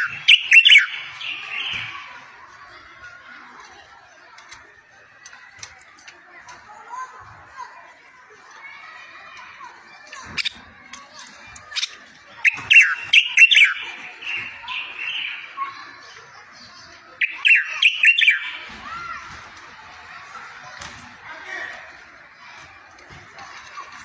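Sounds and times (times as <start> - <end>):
soft bird twittering: 0.0 - 2.8, 10.0 - 19.2
songbird chirping and trilling: 0.0 - 20.8.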